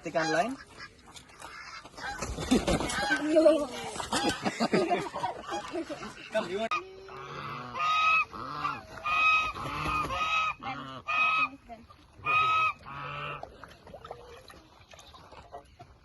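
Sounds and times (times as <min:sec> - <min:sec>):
geese honking: 0:00.0 - 0:03.3, 0:05.2 - 0:13.5.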